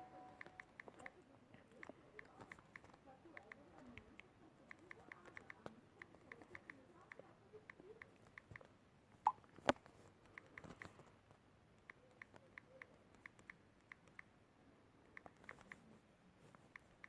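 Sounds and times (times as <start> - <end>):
faint small clicks and taps: 0.3 - 14.4, 15.1 - 17.0.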